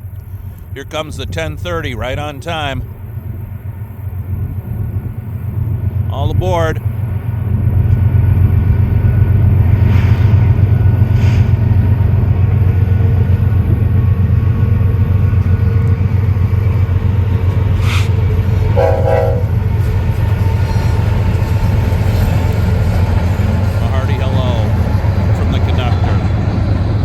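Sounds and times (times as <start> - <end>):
train rumbling past: 0.0 - 27.0
train horn blast: 17.8 - 19.9.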